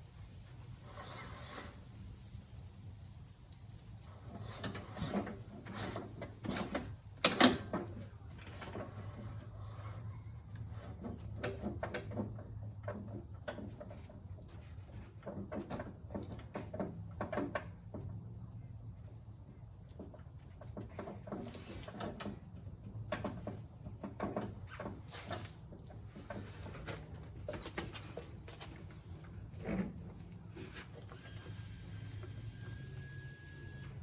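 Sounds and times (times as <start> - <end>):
metal clunks and knocks: 10.9 - 18.2, 20.0 - 30.2.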